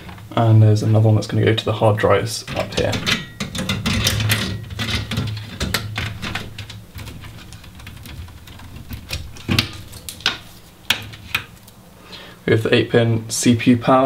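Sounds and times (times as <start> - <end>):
cables and connectors clicking: 2.5 - 11.8.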